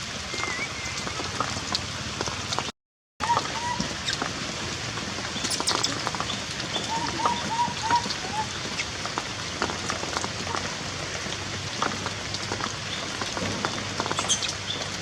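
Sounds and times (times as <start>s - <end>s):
heavy rain pattering: 0.0s - 15.0s
baby monkey squeaking: 5.4s - 6.0s.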